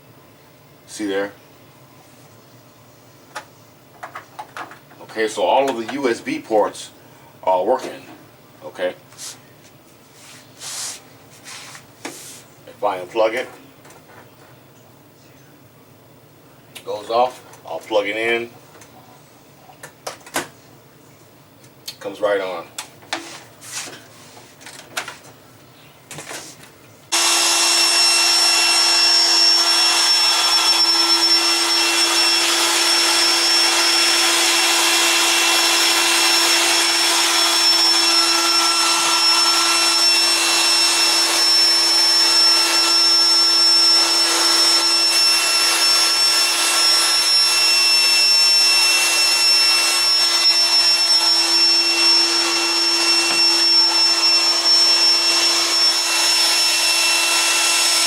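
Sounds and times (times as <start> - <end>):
electric motor whirring: 27.1 - 58.0.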